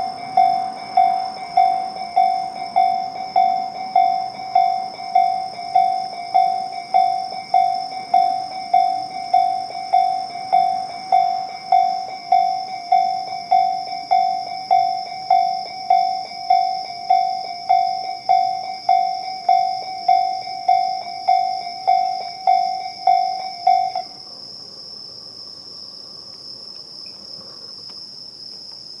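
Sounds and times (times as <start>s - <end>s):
level crossing electronic bell: 0.0s - 24.1s
insects chirring: 0.0s - 29.0s.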